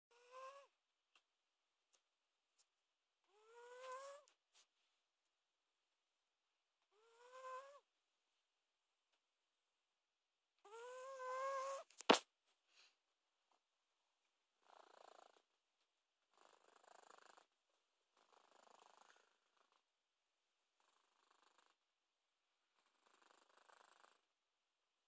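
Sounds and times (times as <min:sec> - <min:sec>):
cat snoring: 0:00.1 - 0:00.8, 0:03.3 - 0:04.3, 0:06.9 - 0:07.9, 0:10.6 - 0:11.9, 0:14.6 - 0:15.5, 0:16.3 - 0:17.5, 0:18.2 - 0:19.8, 0:20.8 - 0:21.8, 0:22.8 - 0:24.3.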